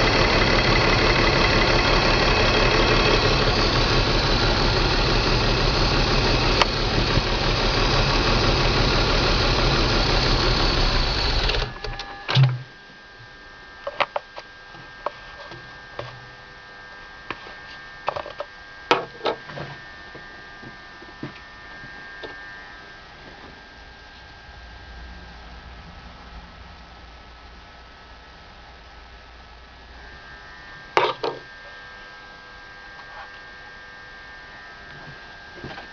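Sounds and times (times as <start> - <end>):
car engine running: 0.0 - 11.8
faint steady hum: 0.0 - 35.9.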